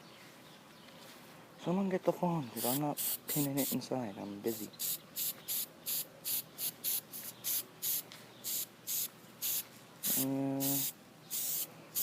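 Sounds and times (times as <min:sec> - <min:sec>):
aerosol spray can hissing: 0:02.6 - 0:03.7, 0:04.5 - 0:12.0.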